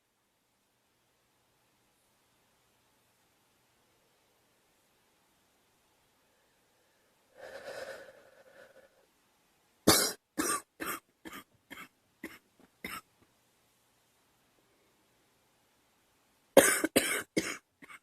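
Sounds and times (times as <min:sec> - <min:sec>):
girl coughing: 0:09.9 - 0:13.0, 0:16.6 - 0:18.0.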